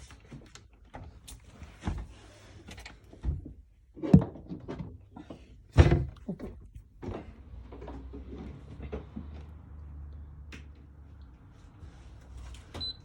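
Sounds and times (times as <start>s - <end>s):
knocks and thuds of a cooktop: 5.7s - 6.2s.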